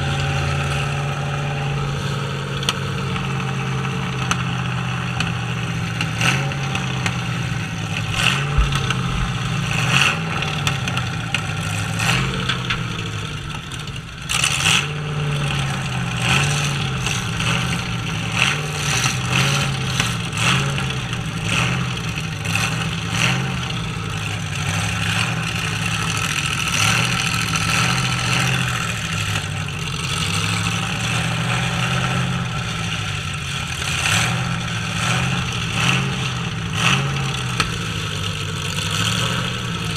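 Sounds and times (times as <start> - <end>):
truck engines revving: 0.0 - 39.9
trucks crashing bangs: 7.6 - 17.3.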